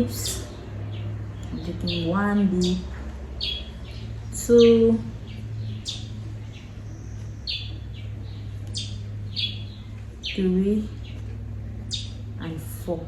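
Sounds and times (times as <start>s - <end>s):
birds chirping: 0.0s - 13.0s
steady low hum: 0.0s - 13.0s.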